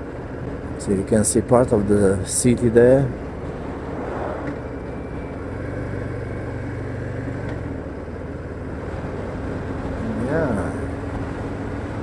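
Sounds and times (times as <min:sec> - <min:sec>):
motorcycle engine running: 0:04.6 - 0:12.0.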